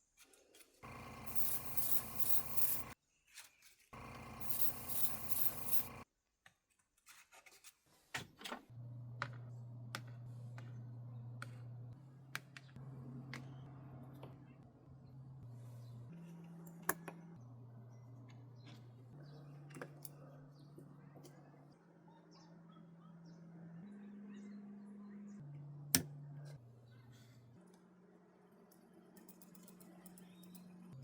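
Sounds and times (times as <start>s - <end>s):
low steady hum: 0.8s - 3.0s.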